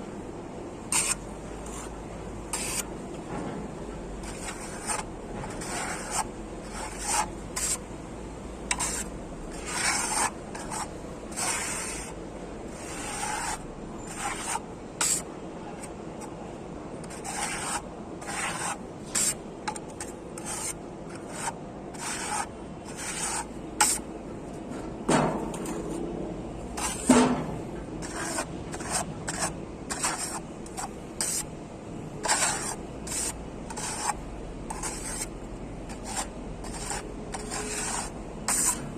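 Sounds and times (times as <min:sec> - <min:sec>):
plastering tool scraping wall: 0:00.9 - 0:01.9, 0:02.5 - 0:02.9, 0:04.2 - 0:07.8, 0:08.7 - 0:15.3, 0:17.0 - 0:19.4, 0:20.0 - 0:24.0, 0:26.8 - 0:31.4, 0:32.2 - 0:35.3, 0:35.9 - 0:38.8.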